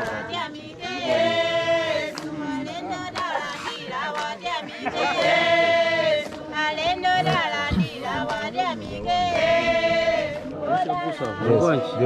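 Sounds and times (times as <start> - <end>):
group of people singing: 0.0 - 12.0.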